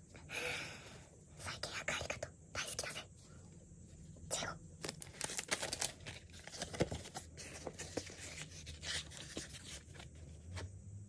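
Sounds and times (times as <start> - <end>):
packaging rustling and scraping: 4.8 - 10.7.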